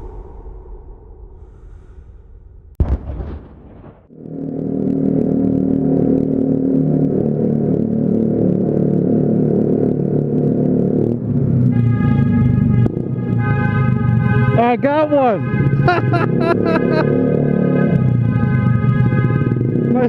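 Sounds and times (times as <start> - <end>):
scooter engine revving loud: 15.9 - 20.0.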